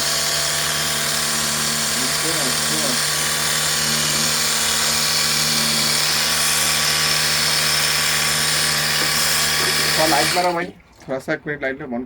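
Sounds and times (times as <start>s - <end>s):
electric pump humming: 0.0s - 10.8s.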